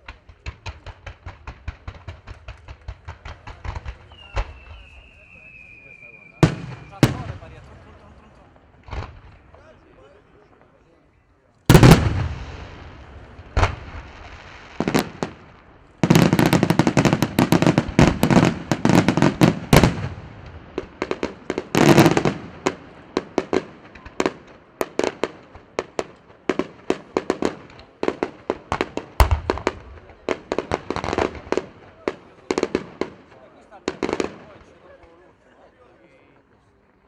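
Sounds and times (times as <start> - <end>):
fireworks bangs: 0.0 - 9.8, 11.7 - 34.9
fireworks crackling: 0.0 - 10.8, 11.7 - 35.4.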